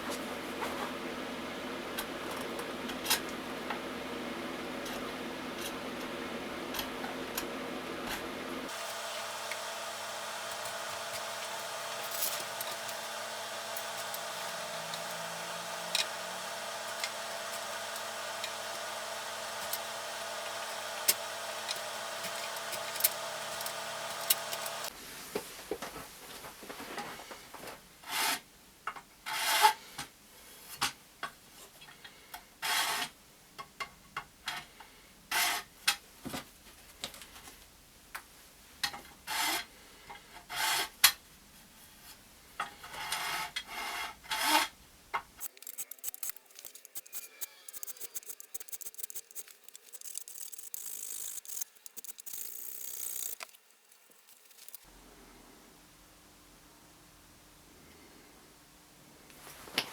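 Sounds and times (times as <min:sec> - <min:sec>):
steady hum: 0:06.7 - 0:24.9.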